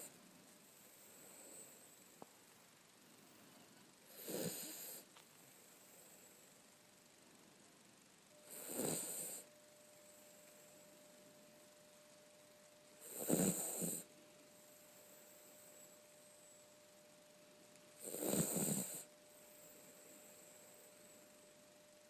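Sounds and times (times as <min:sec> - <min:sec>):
person snoring: 0:04.1 - 0:05.1, 0:08.4 - 0:09.5, 0:13.0 - 0:14.1, 0:18.0 - 0:19.1.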